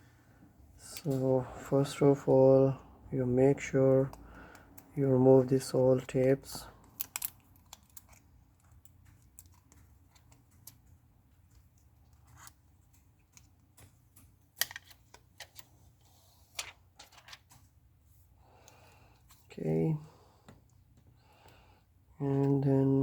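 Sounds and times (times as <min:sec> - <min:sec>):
small clicks and scratches: 0:06.8 - 0:17.7.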